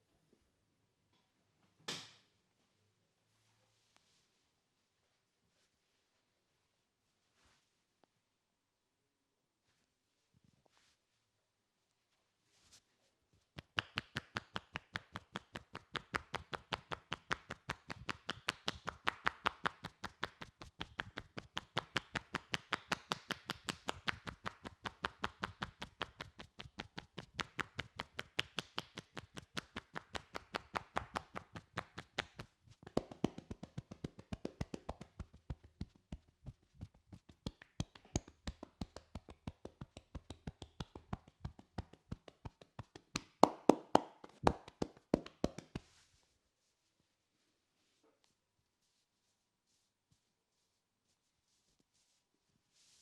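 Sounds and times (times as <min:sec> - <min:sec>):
hands striking a back: 0:13.6 - 0:46.0.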